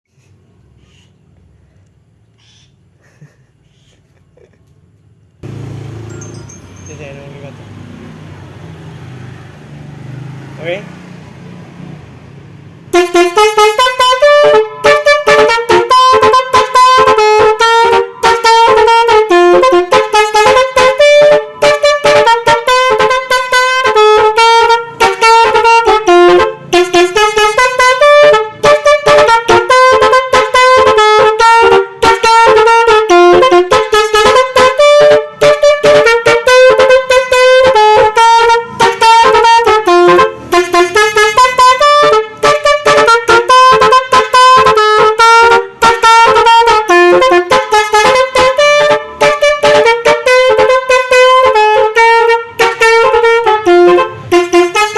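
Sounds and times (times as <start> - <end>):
musical bus air horn tune: 12.9 - 54.9.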